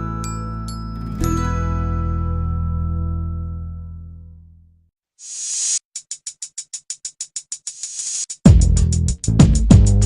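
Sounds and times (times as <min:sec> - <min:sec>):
chime-like chord jingle: 0:00.0 - 0:04.4.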